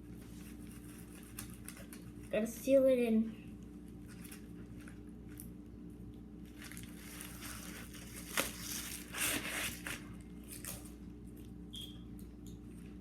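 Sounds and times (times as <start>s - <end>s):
tape and plastic crinkling: 0.2s - 2.4s, 3.6s - 5.6s, 6.4s - 11.5s.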